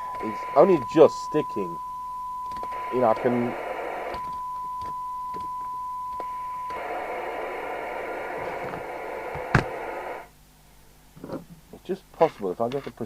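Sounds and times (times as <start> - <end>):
radio test tone: 0.0 - 10.3
radio receiver hiss: 0.0 - 10.4.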